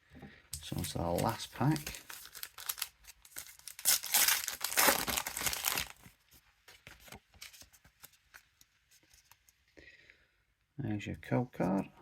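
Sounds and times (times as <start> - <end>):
foil wrapper tearing and crinkling: 0.8 - 6.2
cards rustling and clicking: 6.7 - 9.6.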